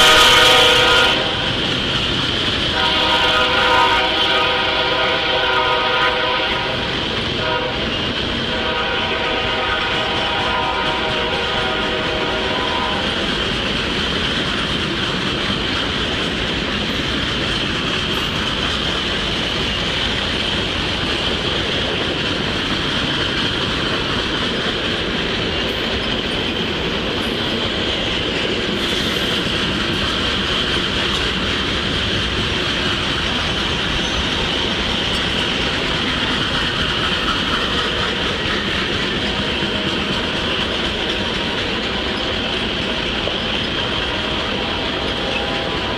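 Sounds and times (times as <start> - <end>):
locomotive horn: 0.0 - 1.6, 2.7 - 13.2, 44.0 - 45.9
train wheels rumbling on rails: 0.0 - 45.9
high wheel squeal: 28.7 - 30.4, 33.0 - 45.9.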